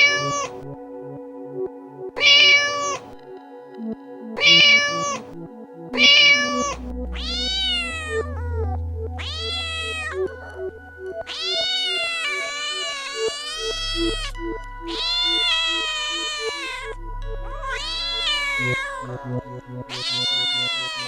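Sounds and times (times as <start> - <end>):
cat meowing: 0.0 - 0.6, 2.2 - 3.1, 4.4 - 5.2, 6.0 - 10.3, 11.3 - 14.3, 14.9 - 21.0
soft background music: 0.0 - 21.0.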